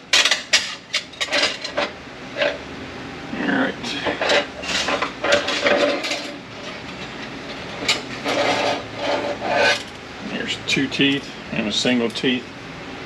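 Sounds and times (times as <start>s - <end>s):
metal parts clanking and rattling: 0.1s - 2.6s, 4.1s - 10.0s.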